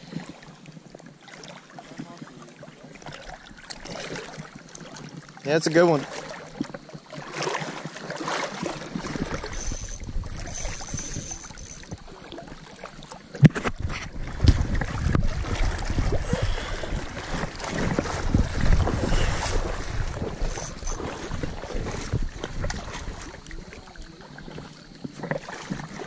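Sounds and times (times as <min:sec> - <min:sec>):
wind buffeting microphone: 0:08.9 - 0:12.2, 0:13.4 - 0:24.0.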